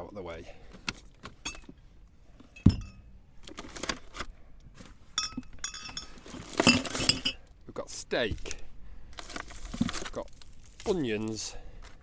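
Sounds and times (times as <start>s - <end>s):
glass bottles clinking: 1.4s - 1.8s, 2.5s - 3.1s, 5.2s - 7.4s.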